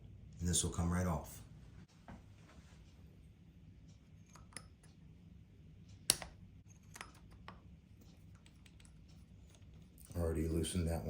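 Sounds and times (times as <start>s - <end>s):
clicks of hex driver and metal parts: 6.1s - 7.6s.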